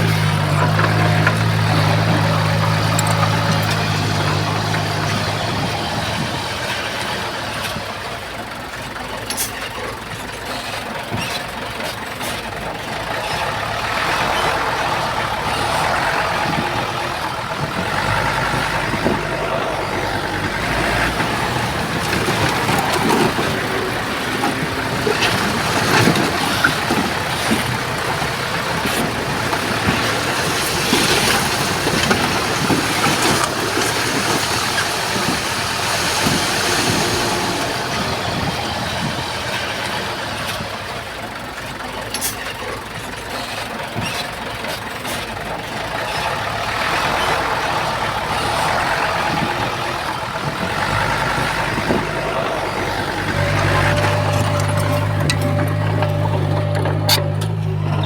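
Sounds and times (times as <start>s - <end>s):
heavy diesel machinery rumbling: 0.0s - 58.0s.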